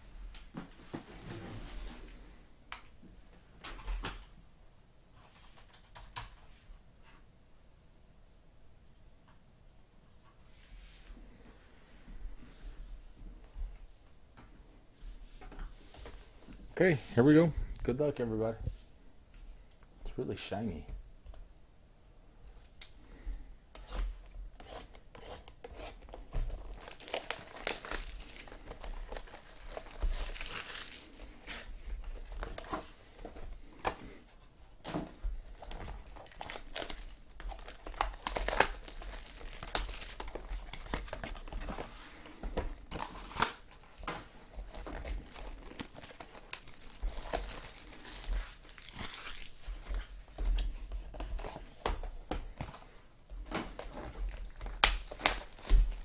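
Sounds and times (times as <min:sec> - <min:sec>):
packaging tearing and crinkling: 0:26.0 - 0:32.6, 0:35.5 - 0:41.9, 0:42.7 - 0:49.9, 0:53.8 - 0:56.0.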